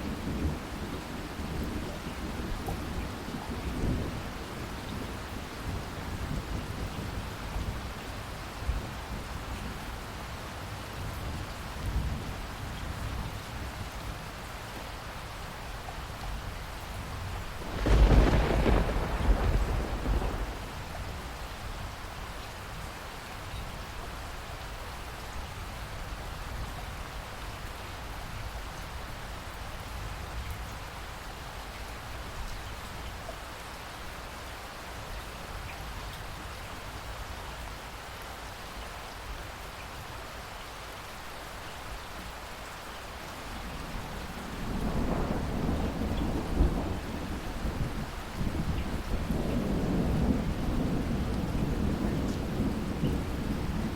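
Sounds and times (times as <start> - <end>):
heavy rain falling: 0.0 - 53.9
thunder clap rumbling: 17.6 - 21.2, 43.9 - 53.9.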